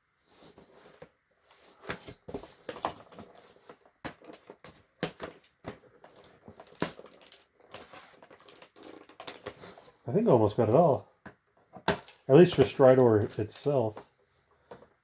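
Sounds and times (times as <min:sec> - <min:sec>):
plastic packaging crinkling: 0:08.0 - 0:09.5.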